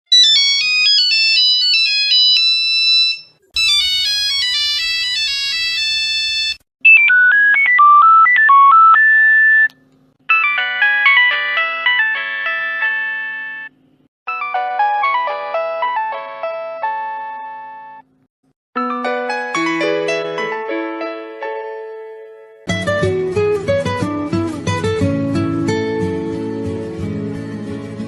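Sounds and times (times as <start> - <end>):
mobile phone ringtones: 0.1 - 9.7, 10.3 - 13.7.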